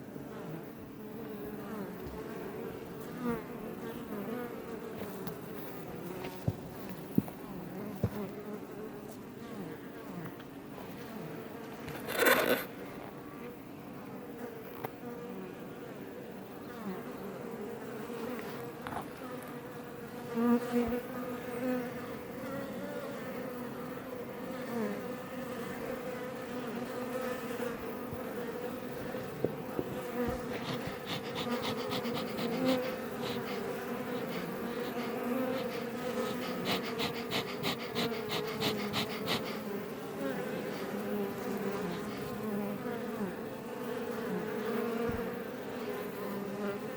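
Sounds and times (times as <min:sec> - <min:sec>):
bees buzzing: 0:27.0 - 0:45.1.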